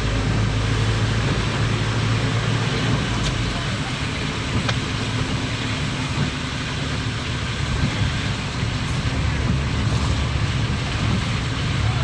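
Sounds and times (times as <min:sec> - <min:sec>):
vehicle engine and road noise: 0:00.0 - 0:12.0.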